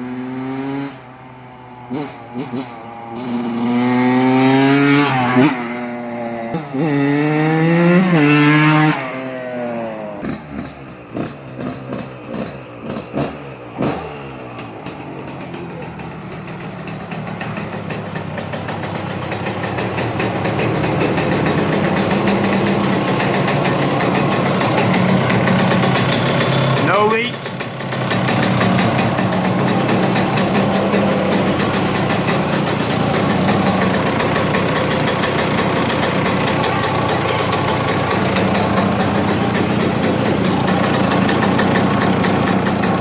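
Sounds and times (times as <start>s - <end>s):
two-stroke engine revving: 0.0s - 43.0s
engine popping off throttle: 10.2s - 43.0s.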